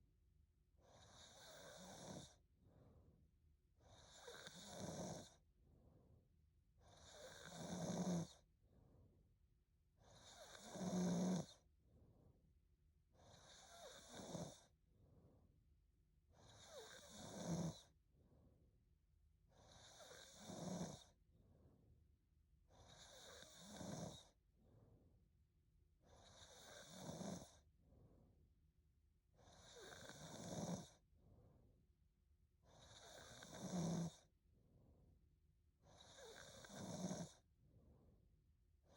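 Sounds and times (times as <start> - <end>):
woman snoring: 1.0 - 2.4, 4.0 - 5.3, 7.0 - 8.4, 10.1 - 11.6, 13.3 - 14.6, 16.4 - 17.8, 19.6 - 21.1, 22.9 - 24.3, 26.2 - 27.6, 29.5 - 31.0, 32.7 - 34.3, 35.9 - 37.4.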